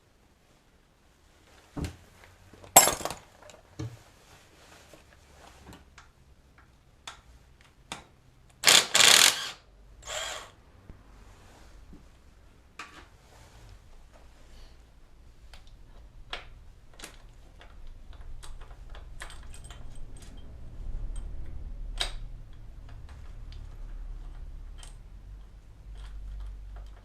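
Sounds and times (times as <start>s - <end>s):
scraping or rattling bursts: 8.6s - 10.5s.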